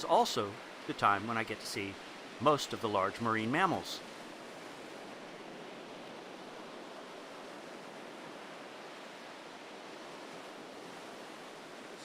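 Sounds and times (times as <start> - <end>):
ocean waves on a sandy beach: 0.0 - 12.0.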